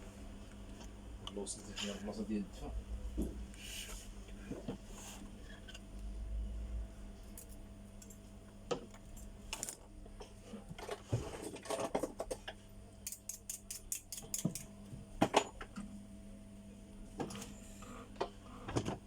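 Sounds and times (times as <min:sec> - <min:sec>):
hand tools clicking and scraping: 0:13.1 - 0:14.7.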